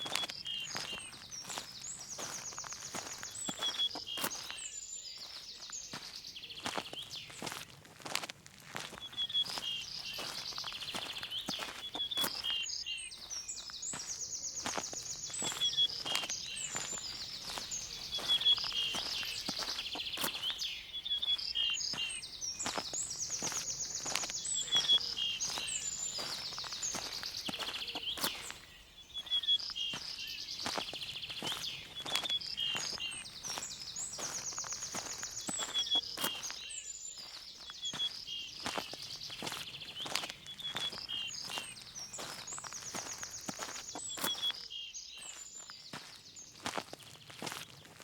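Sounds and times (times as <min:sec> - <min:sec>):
songbirds chirping and trilling: 0:00.0 - 0:48.0
footsteps: 0:05.2 - 0:12.6, 0:13.9 - 0:20.6, 0:21.2 - 0:36.6, 0:37.2 - 0:44.6.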